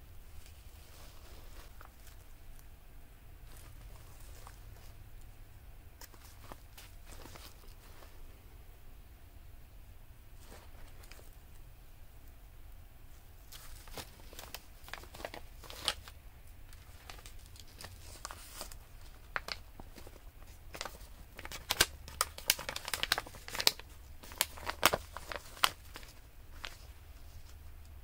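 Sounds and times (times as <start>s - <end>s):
paper pages crinkling and rustling: 0.4s - 2.7s, 3.4s - 5.0s, 6.0s - 8.3s, 10.4s - 11.4s, 13.4s - 28.0s.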